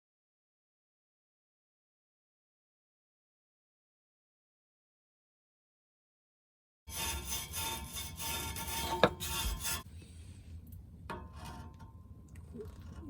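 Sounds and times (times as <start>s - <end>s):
rapid rubbing and scraping: 6.9s - 9.9s.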